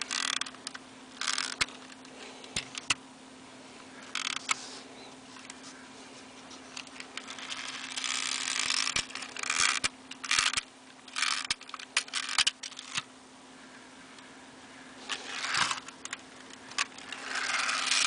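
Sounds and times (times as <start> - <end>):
toy car clicks and knocks: 0.0 - 1.8, 2.5 - 3.0, 6.8 - 13.1, 15.1 - 18.0
raspy whirring and scraping: 0.0 - 3.0, 3.6 - 13.1, 13.7 - 18.0.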